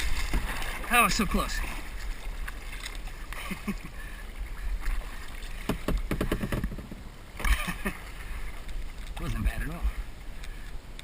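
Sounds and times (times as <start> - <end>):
knocks and splashes: 0.0 - 3.8, 4.8 - 9.6
water lapping against hull: 0.0 - 11.0.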